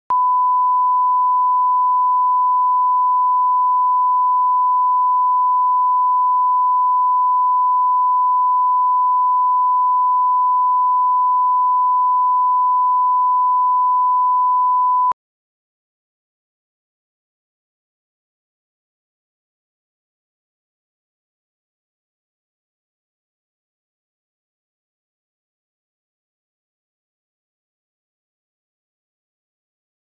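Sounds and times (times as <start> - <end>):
sine-wave test tone: 0.1 - 15.2.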